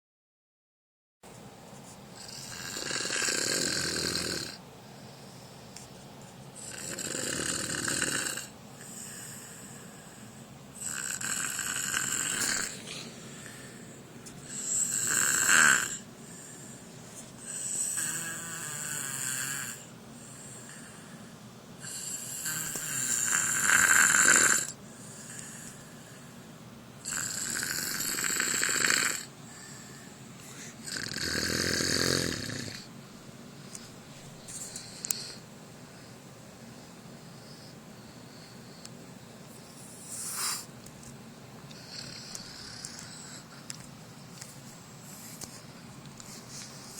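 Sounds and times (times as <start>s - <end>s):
snoring: 2.2s - 4.6s, 6.6s - 10.2s, 10.8s - 13.8s, 14.5s - 16.6s, 17.4s - 21.0s, 21.8s - 25.8s, 27.0s - 29.3s, 30.5s - 32.9s, 39.7s - 40.7s, 41.8s - 43.5s.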